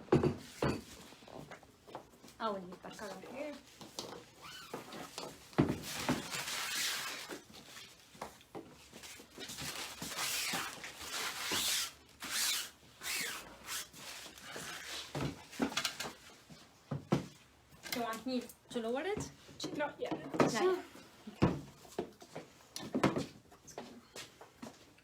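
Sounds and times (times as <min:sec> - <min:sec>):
items rustling on a tabletop: 0:00.1 - 0:25.0.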